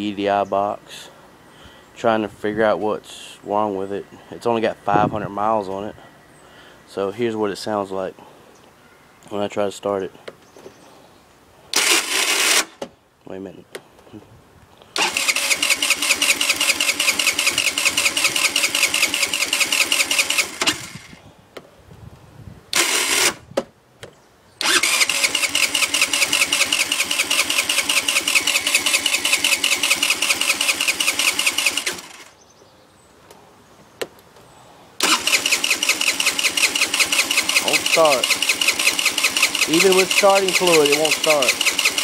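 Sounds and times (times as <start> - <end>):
scooter starter cranking engine: 11.7 - 12.8, 15.0 - 21.2, 22.7 - 23.5, 24.6 - 32.4, 35.0 - 42.0.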